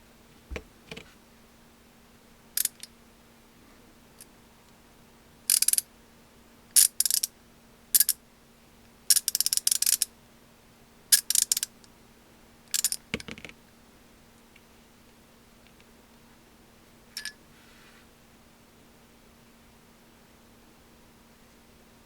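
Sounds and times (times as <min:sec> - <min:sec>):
ratchet handle clicking: 0:02.6 - 0:02.9, 0:05.5 - 0:05.8, 0:06.8 - 0:07.3, 0:09.1 - 0:10.1, 0:11.2 - 0:11.7, 0:12.7 - 0:13.0.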